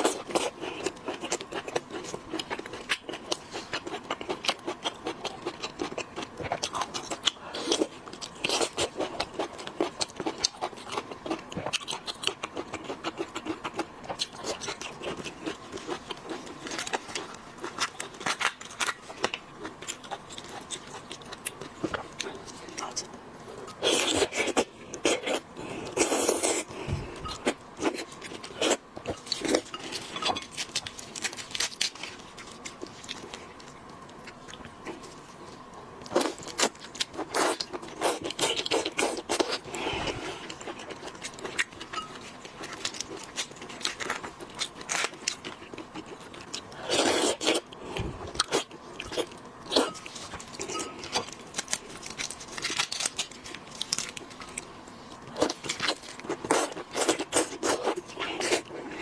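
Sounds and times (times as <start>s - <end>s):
shells cracking and crunching: 50.1s - 54.7s.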